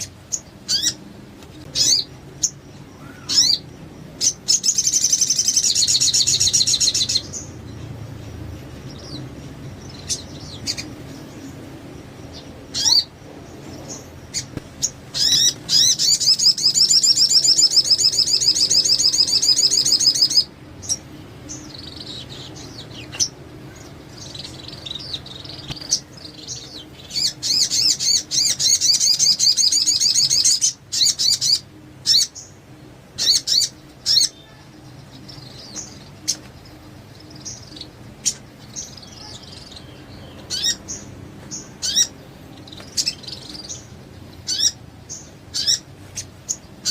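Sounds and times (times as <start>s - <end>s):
bird trilling: 0.0s - 7.7s, 12.3s - 13.2s, 13.8s - 32.6s, 33.2s - 46.9s
bird chirps and calls: 0.0s - 46.9s.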